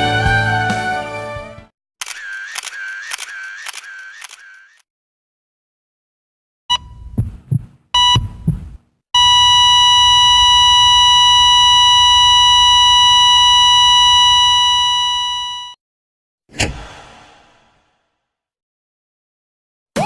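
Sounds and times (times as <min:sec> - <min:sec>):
heart monitor beeps: 0:06.7 - 0:15.8
low heartbeat thumps: 0:06.9 - 0:08.9
flatline tone: 0:09.2 - 0:15.8.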